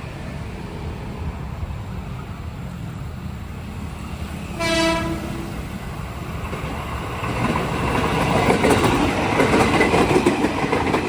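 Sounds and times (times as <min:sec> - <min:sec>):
train horn toot: 0:04.6 - 0:05.6.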